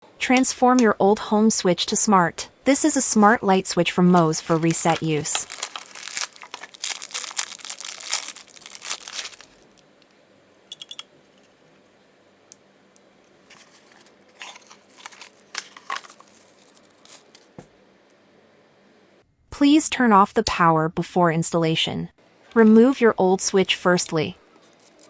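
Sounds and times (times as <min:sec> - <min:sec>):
clicks and rustles: 0:02.8 - 0:09.8, 0:13.5 - 0:17.5, 0:22.4 - 0:25.0
packaging crinkling and tearing: 0:02.8 - 0:09.8, 0:13.5 - 0:17.5, 0:22.4 - 0:25.0.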